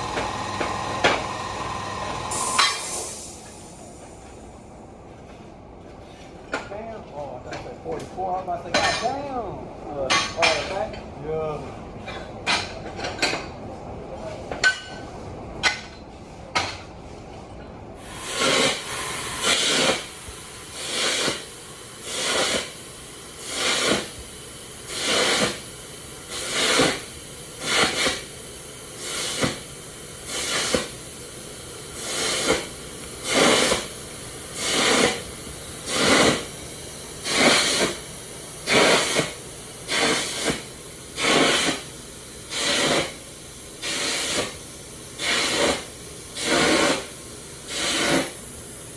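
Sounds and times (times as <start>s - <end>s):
welding arc sizzling: 0.0s - 3.8s, 18.0s - 48.9s.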